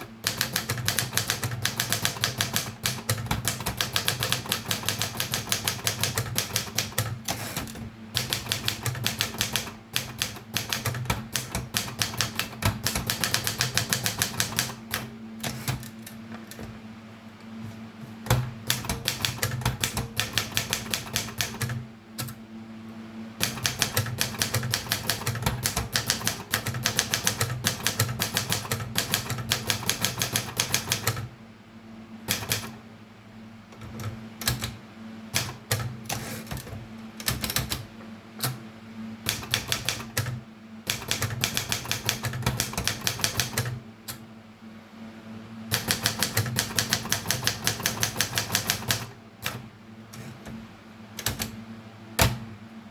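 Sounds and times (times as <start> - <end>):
steady low hum: 0.0 - 52.9
typewriter keys clacking: 0.2 - 14.8, 18.7 - 21.8, 23.4 - 31.2, 32.3 - 32.7, 39.3 - 40.2, 40.9 - 43.7, 45.7 - 49.1.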